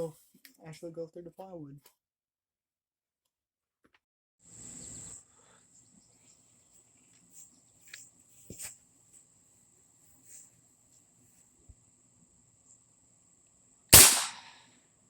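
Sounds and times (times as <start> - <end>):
sharp clicks: 14.0 - 14.5.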